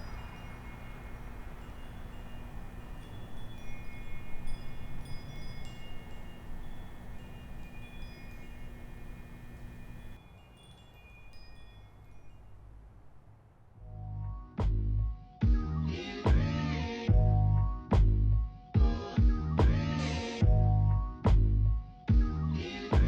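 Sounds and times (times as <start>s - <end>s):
low hum: 0.0s - 10.2s
steady noisy background: 0.0s - 10.2s
wind chimes ringing: 0.0s - 13.4s.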